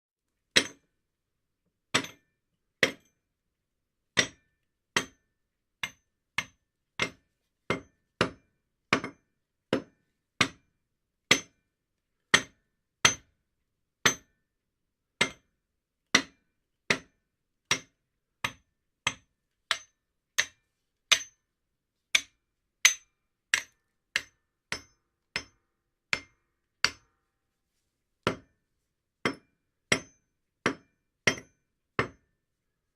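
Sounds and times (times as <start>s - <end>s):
hammer striking cement: 0.6s - 0.9s, 2.0s - 2.2s, 4.2s - 4.4s, 5.8s - 10.7s, 11.3s - 11.6s, 12.3s - 13.3s, 14.1s - 14.3s, 15.2s - 15.5s, 16.2s - 21.4s, 22.2s - 27.1s, 28.2s - 28.5s, 29.2s - 32.2s.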